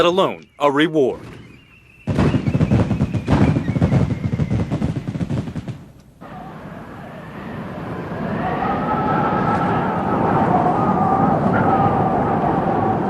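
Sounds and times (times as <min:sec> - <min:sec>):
rapid crackling pops: 0:01.2 - 0:06.1
strong wind howling: 0:06.2 - 0:13.0.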